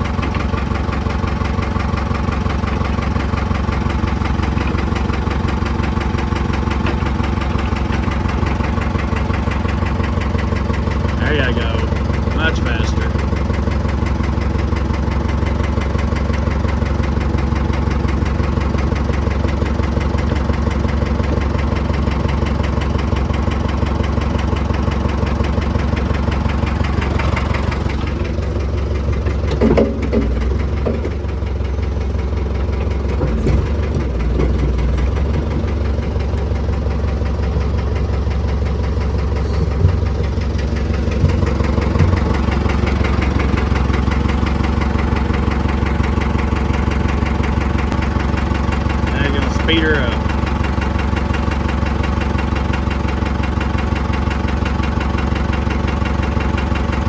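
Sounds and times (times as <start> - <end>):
truck engine idling: 0.0 - 57.0
short clunks: 29.4 - 31.2, 33.1 - 35.5.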